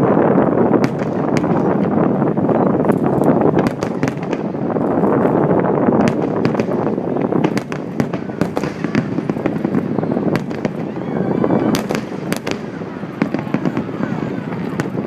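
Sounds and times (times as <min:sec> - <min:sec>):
fireworks bursting and crackling: 0:00.0 - 0:15.0.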